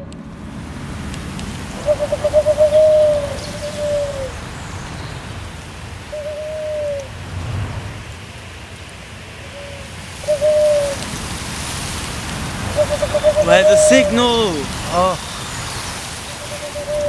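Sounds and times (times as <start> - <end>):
steady hiss: 0.3 - 17.0
owl hooting: 1.7 - 7.1, 9.4 - 11.0, 12.7 - 15.5, 16.2 - 17.0.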